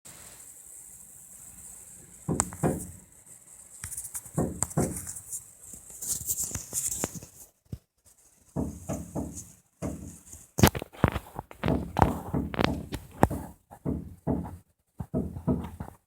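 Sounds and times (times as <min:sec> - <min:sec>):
woodpecker pecking wood: 0:08.6 - 0:10.2, 0:11.6 - 0:15.9.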